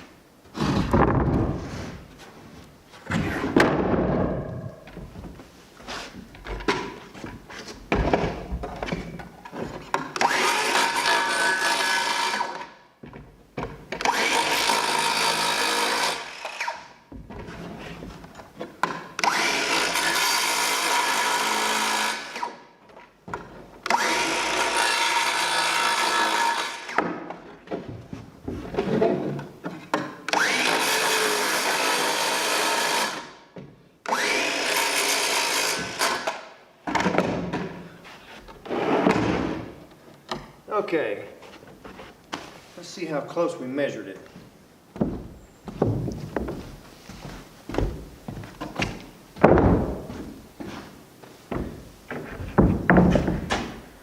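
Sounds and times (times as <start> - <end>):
power tool cutting wood: 10.2 - 12.8, 14.0 - 17.0, 19.2 - 22.6, 23.8 - 27.1, 30.3 - 33.4, 34.1 - 36.5
knocks and clatter: 51.5 - 53.8.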